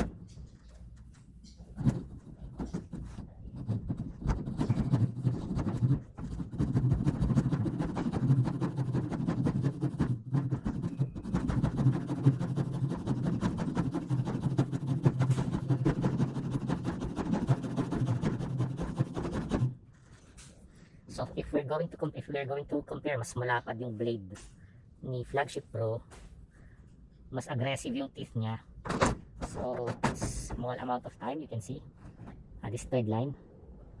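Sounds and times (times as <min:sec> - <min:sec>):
saw blade sawing wood: 0:03.6 - 0:19.7.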